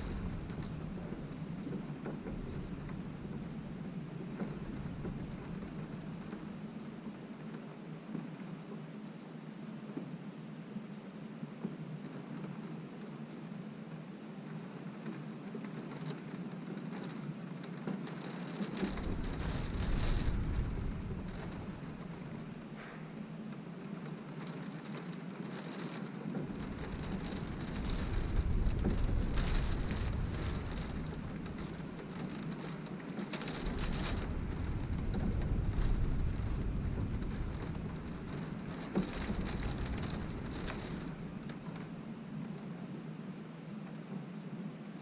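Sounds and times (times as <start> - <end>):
wind gust rumble: 0.0 - 6.3, 18.6 - 23.2, 26.4 - 41.9
rain beating on window: 0.0 - 45.0.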